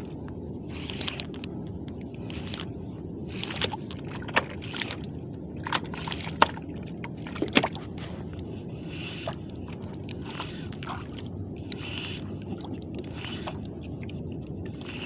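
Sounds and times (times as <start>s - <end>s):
steady low rumble: 0.0s - 15.0s
water sloshing against boat hull: 0.0s - 15.0s.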